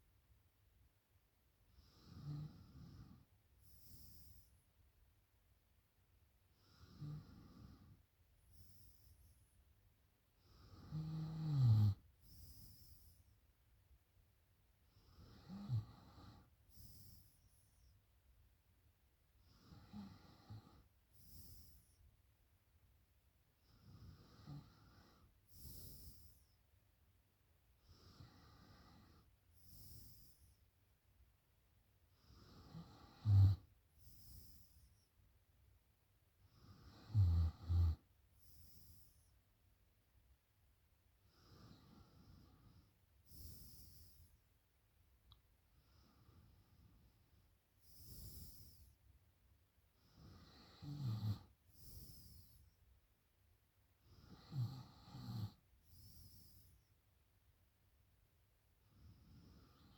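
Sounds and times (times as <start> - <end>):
low snore: 6.6 - 9.1, 10.5 - 13.2, 15.0 - 17.9, 23.7 - 26.6, 32.2 - 35.0, 36.6 - 39.2, 43.3 - 44.3, 47.8 - 49.0, 50.1 - 52.7, 54.1 - 56.8.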